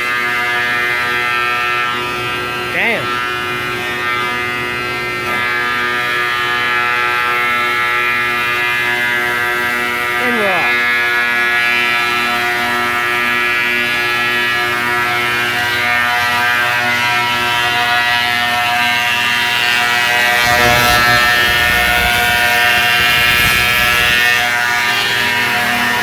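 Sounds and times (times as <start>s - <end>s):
planer whining: 20.1s - 24.5s
wood passing through cutters: 20.4s - 24.4s.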